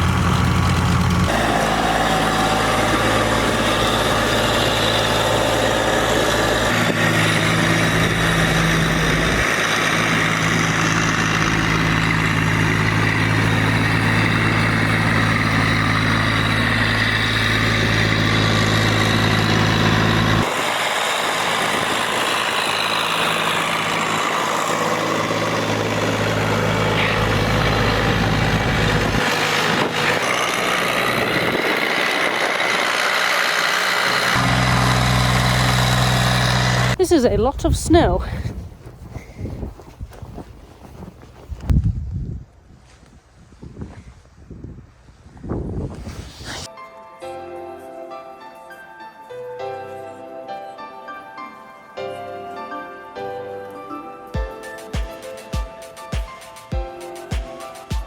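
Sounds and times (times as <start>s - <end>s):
heavy vehicle engine humming: 0.0s - 38.8s.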